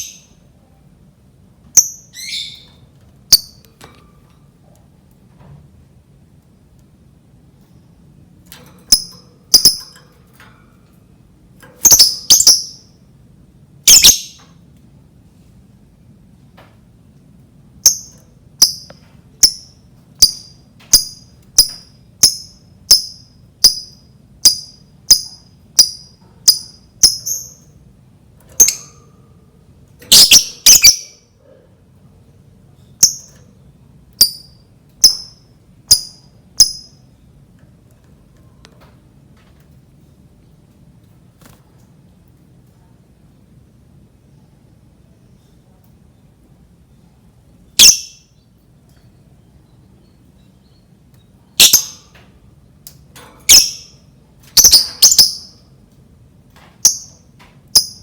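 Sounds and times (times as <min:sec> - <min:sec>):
lovebird shrill calls: 0:01.8 - 0:02.7, 0:11.8 - 0:12.8, 0:13.9 - 0:14.4, 0:30.1 - 0:31.2, 0:47.8 - 0:48.2, 0:51.6 - 0:52.0, 0:53.5 - 0:54.0, 0:54.6 - 0:55.5.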